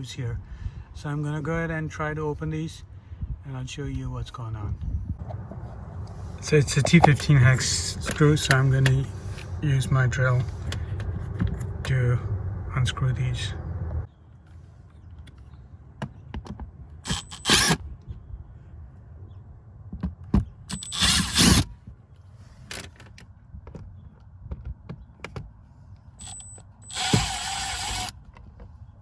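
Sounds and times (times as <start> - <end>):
power drill whining: 17.1 - 17.8, 20.7 - 21.7, 26.2 - 28.2.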